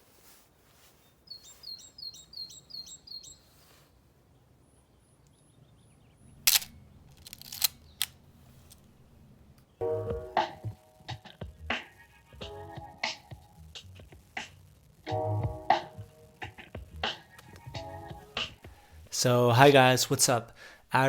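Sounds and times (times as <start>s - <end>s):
camera shutter clicks: 6.5s - 8.8s.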